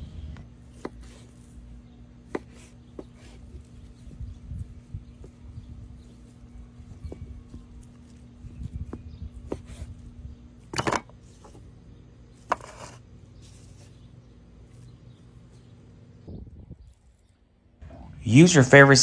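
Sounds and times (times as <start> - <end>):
knife on cutting board: 12.5 - 13.0.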